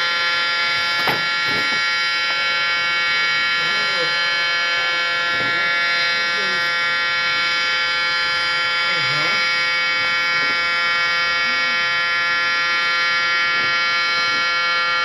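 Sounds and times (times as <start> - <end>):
warning siren steady buzzy tone: 0.0 - 15.0
faint voices: 3.0 - 7.7, 8.8 - 12.2.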